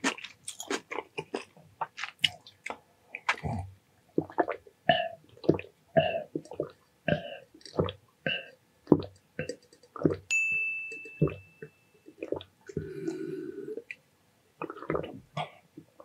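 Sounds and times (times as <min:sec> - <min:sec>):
mouth chewing and smacking: 0:00.0 - 0:03.6
ding: 0:10.3 - 0:12.2.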